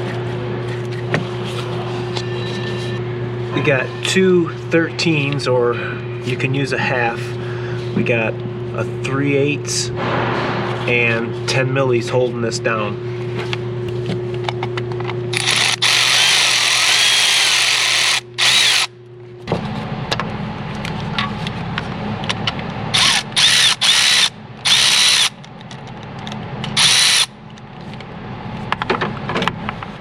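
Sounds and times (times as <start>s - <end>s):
cordless power tool whining: 15.3s - 18.9s, 22.9s - 25.3s, 26.8s - 27.3s.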